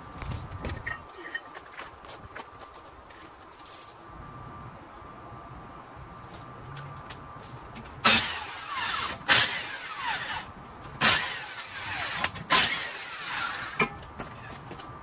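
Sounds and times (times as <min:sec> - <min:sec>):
impact wrench bursts: 0:08.0 - 0:14.0.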